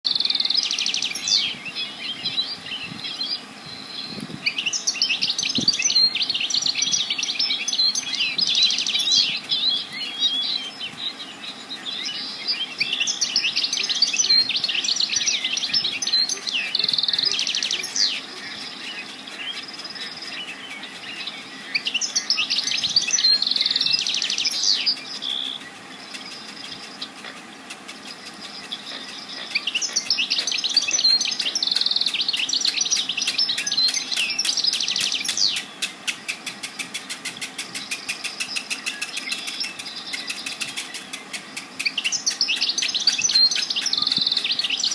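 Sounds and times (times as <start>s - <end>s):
songbirds chirping and trilling: 0.0s - 44.9s.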